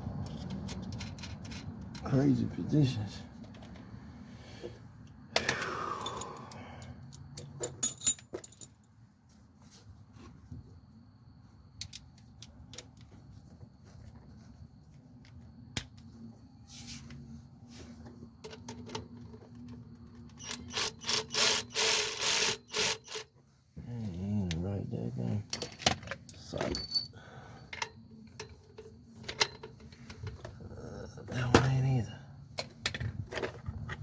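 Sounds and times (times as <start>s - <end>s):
metal tools clinking on engine: 6.0s - 8.8s, 20.2s - 23.3s, 25.4s - 30.4s.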